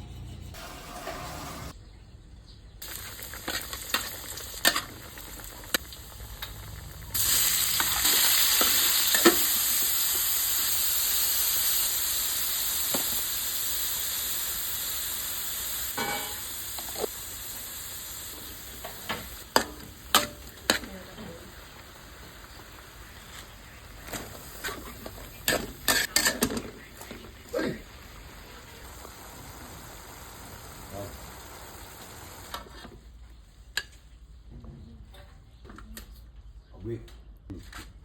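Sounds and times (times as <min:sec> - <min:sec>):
food sizzling in hot oil: 0:02.8 - 0:32.7.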